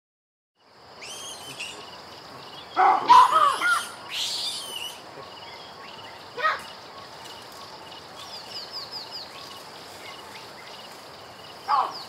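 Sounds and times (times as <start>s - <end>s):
birds chirping: 0.6s - 12.0s
baboon barking calls: 2.7s - 5.3s, 6.3s - 6.8s, 11.7s - 12.0s.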